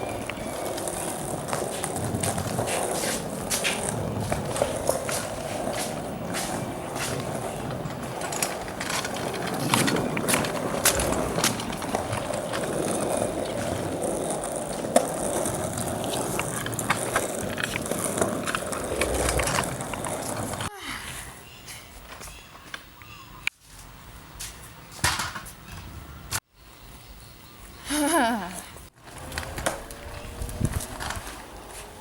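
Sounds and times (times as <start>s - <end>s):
scooter wheels rolling on pavement: 0.0s - 20.7s, 28.8s - 32.0s.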